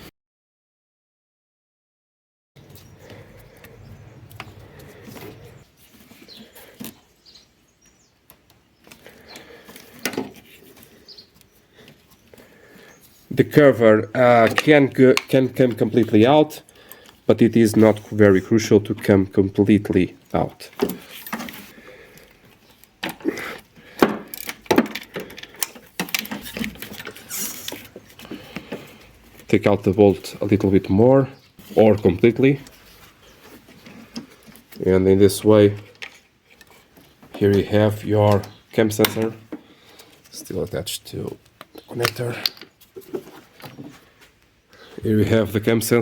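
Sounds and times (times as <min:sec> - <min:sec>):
faint bird chirps: 0:10.9 - 0:13.2
hand tool clicks and metal knocks: 0:14.3 - 0:15.9, 0:23.9 - 0:27.8, 0:38.2 - 0:40.4, 0:41.4 - 0:42.7
hand tools clinking on metal: 0:20.3 - 0:22.3.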